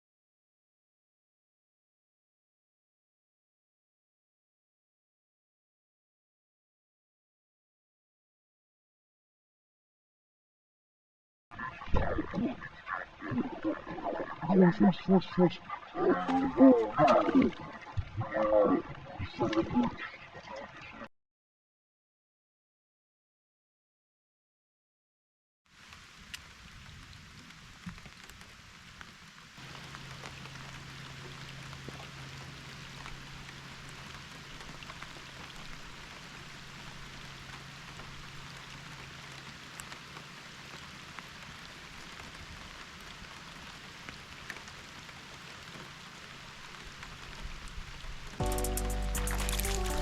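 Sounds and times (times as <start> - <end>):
steady rain falling: 11.6 - 20.0, 25.7 - 50.0
music: 48.4 - 50.0.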